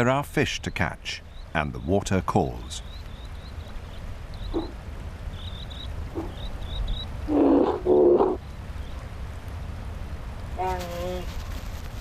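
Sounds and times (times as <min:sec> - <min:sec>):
bear low calls: 0:04.5 - 0:04.8, 0:06.0 - 0:06.5, 0:07.2 - 0:08.4
bear moaning calls: 0:04.5 - 0:04.8, 0:06.1 - 0:06.5, 0:07.2 - 0:08.4.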